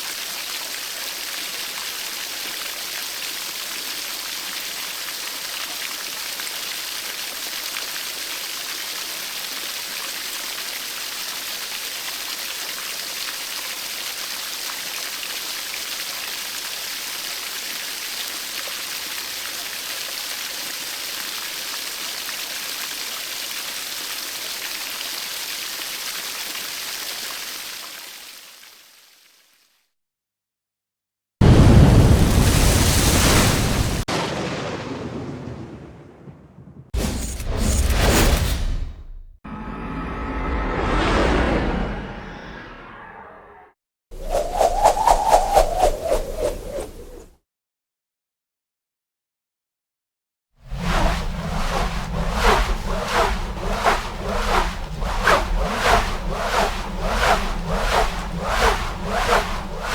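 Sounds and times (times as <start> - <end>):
rushing water: 31.9 - 36.1.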